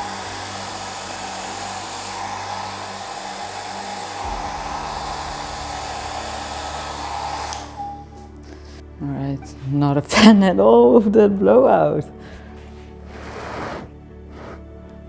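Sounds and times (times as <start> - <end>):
hair dryer blowing: 0.0 - 8.4.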